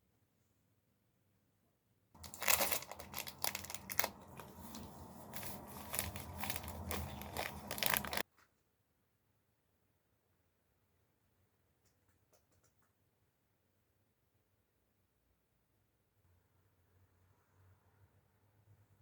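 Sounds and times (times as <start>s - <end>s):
sharp crackles: 2.2s - 8.2s
crinkling and rustling: 2.2s - 8.5s.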